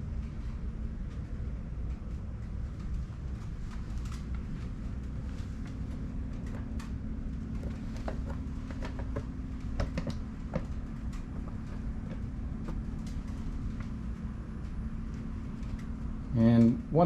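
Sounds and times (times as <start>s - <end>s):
light clicks and ticks: 0.1s - 16.8s.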